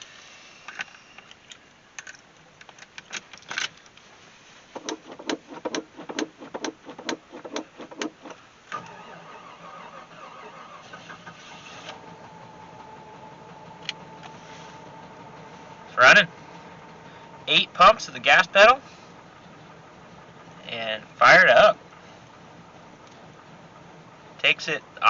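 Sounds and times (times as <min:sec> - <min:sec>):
car engine idling: 0:00.0 - 0:25.0
gas pedal pumping: 0:04.7 - 0:09.0, 0:11.3 - 0:20.7.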